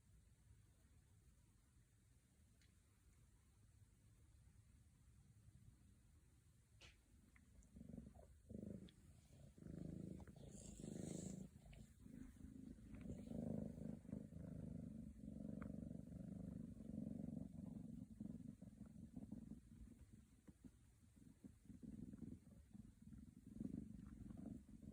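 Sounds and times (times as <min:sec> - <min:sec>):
kitten purring: 0:00.0 - 0:24.9
faint clicks: 0:02.5 - 0:03.2.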